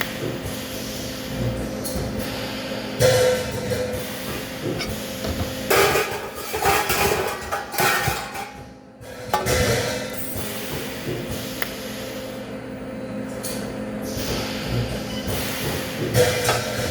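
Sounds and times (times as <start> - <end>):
steady electrical hum: 0.0 - 16.9
metal clanks and clatters: 4.6 - 10.4.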